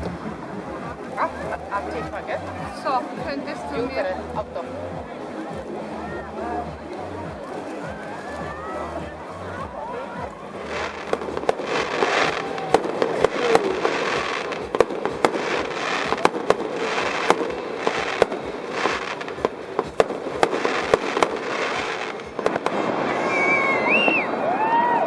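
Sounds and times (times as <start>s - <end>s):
fireworks crackling: 0.0s - 25.0s
fireworks bangs: 10.6s - 24.8s.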